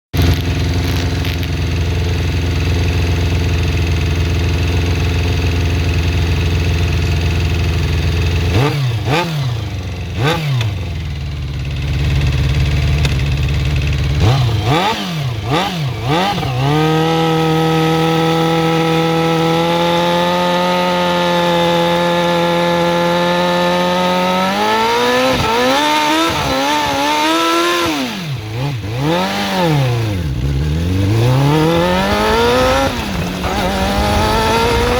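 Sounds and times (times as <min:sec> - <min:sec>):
engine ticking: 0:00.1 - 0:16.7
motorcycle engine idling and revving: 0:00.1 - 0:34.9.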